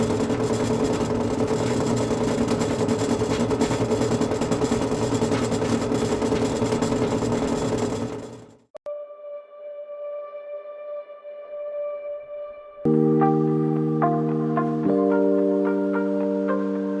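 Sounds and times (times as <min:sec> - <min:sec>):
industrial machine humming: 0:00.0 - 0:08.6.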